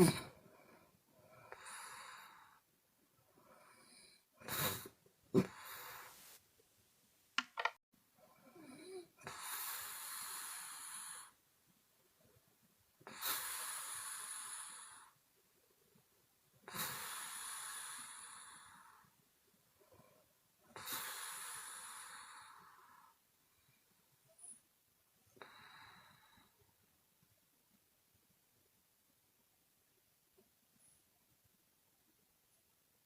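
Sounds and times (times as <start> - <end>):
woman snoring: 8.3 - 11.4, 16.7 - 19.1.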